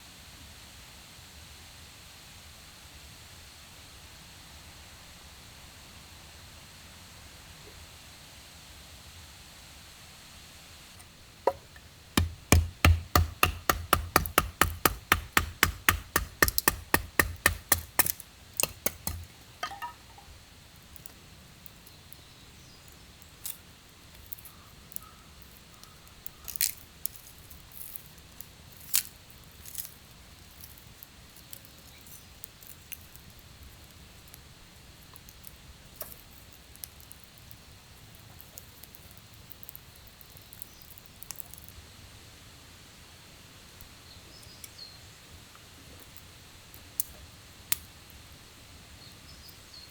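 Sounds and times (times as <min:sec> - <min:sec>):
crackles and pops: 0:11.0 - 0:42.0, 0:43.6 - 0:49.9
rapid sharp knocks: 0:11.5 - 0:20.0.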